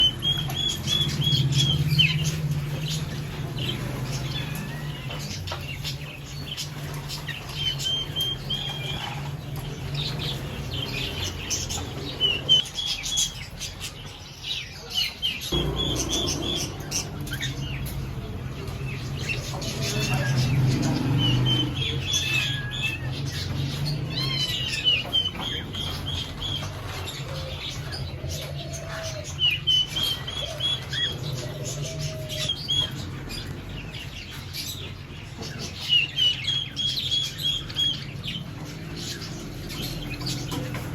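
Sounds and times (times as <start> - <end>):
cockatiels chirping: 0.0 - 14.2, 14.9 - 33.5.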